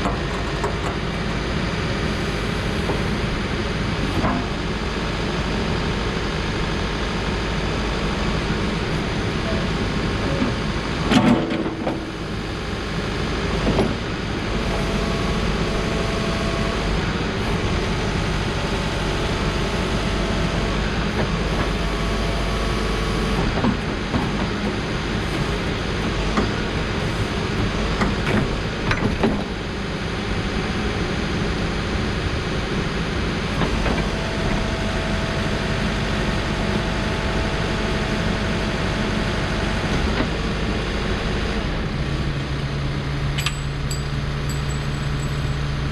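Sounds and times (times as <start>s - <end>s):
hydraulic whine: 0.0s - 24.0s
diesel engine under load: 0.0s - 45.9s.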